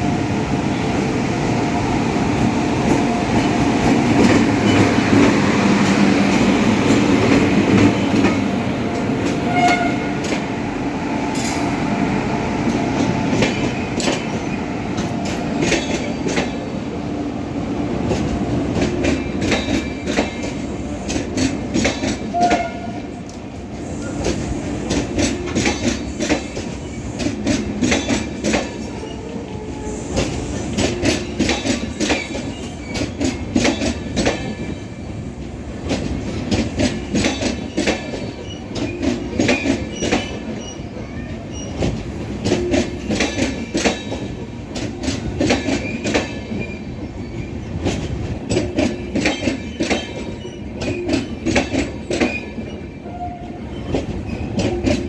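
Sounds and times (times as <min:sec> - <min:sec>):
train rumble: 0:00.0 - 0:55.0
train wheels clattering over rail joints: 0:02.4 - 0:10.6, 0:12.6 - 0:16.7, 0:18.0 - 0:34.9, 0:35.8 - 0:55.0.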